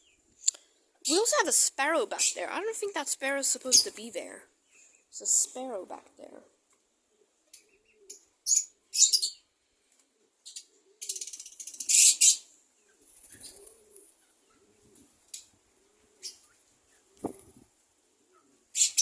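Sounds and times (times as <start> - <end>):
birds chirping: 0.0 - 6.4, 7.0 - 19.0.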